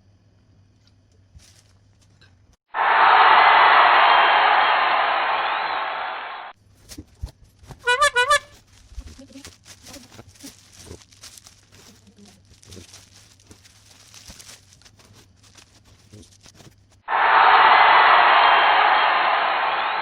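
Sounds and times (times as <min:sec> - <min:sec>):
faint low hum: 0:06.6 - 0:20.0
packaging clicks and rustles: 0:06.9 - 0:17.0.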